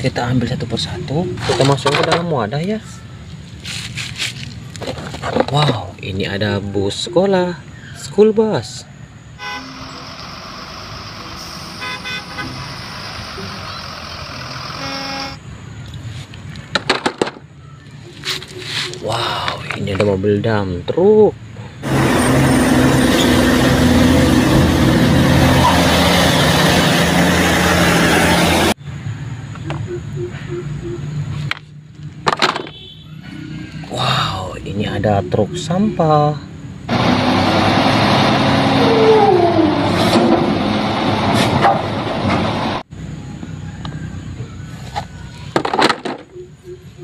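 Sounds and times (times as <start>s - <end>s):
heavy truck engine with whine: 6.6s - 20.0s, 21.4s - 47.0s
truck engine running: 9.4s - 15.4s, 21.8s - 28.8s.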